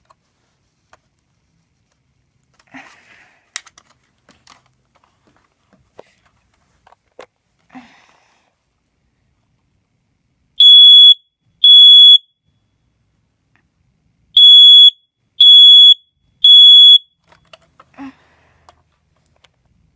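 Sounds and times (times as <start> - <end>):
smoke alarm beeping: 10.6 - 12.3, 14.4 - 17.2.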